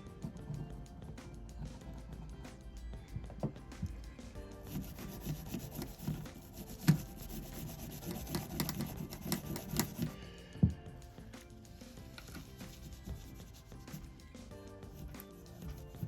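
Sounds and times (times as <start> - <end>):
faint background music: 0.0 - 16.0
hand scrubbing strokes: 4.6 - 10.2, 11.7 - 16.0.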